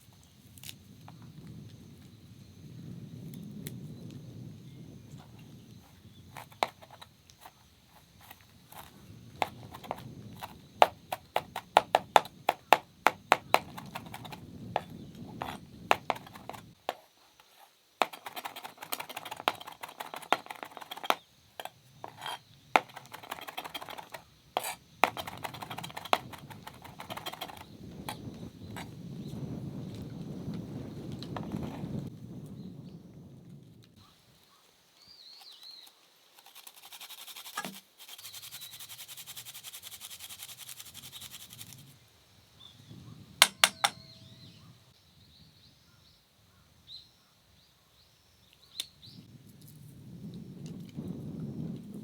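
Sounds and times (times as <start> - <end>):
knife chopping on cutting board: 8.8 - 16.7.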